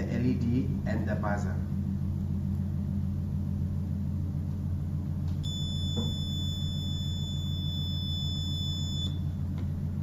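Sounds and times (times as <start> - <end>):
steady low hum: 0.0 - 10.0
high-pitched doorbell beep: 5.4 - 9.3.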